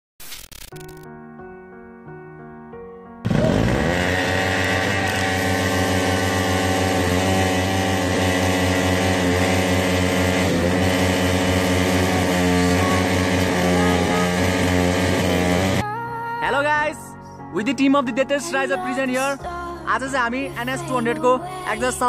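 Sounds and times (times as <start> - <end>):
motorcycle engine running: 3.3 - 15.8.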